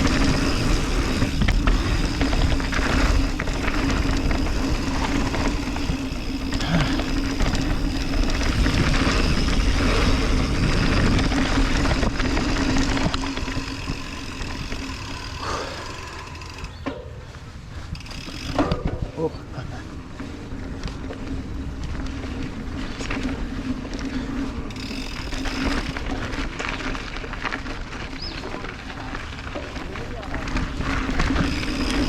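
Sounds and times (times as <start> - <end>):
wind rushing over camera: 0.0 - 19.2
bike tyres and frame rattling: 0.0 - 32.0.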